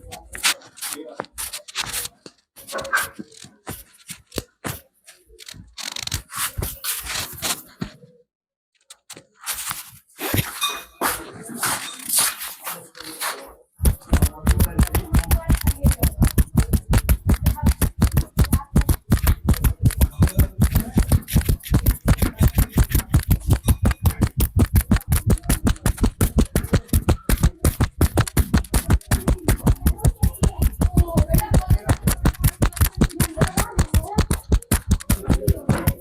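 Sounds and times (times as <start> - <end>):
hands slapping in tapping massage: 13.8 - 36.0.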